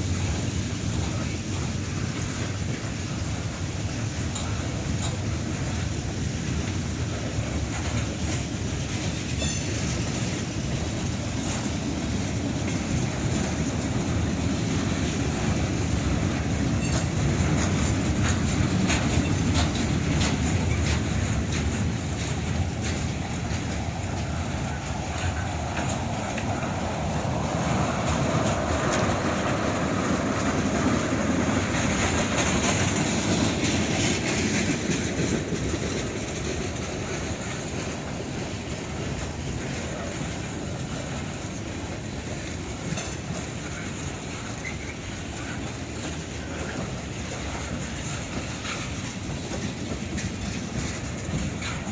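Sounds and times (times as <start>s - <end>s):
freight train wheels clacking: 0.0s - 51.9s.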